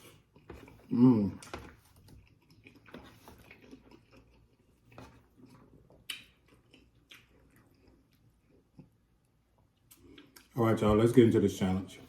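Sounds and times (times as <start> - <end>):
chewing and mouth noises: 0.0 - 10.6.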